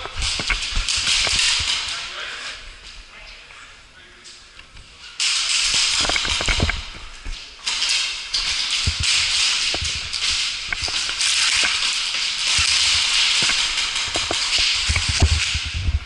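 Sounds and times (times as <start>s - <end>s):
scattered clicks and low knocks: 0.0s - 1.9s, 5.2s - 16.0s.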